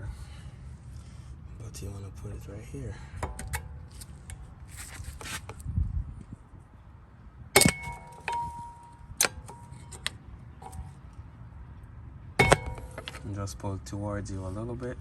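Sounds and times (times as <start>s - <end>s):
sharp ringing metal clinks: 7.6s - 9.9s, 12.4s - 13.3s
metal-on-metal scraping: 7.6s - 11.0s, 12.4s - 13.3s.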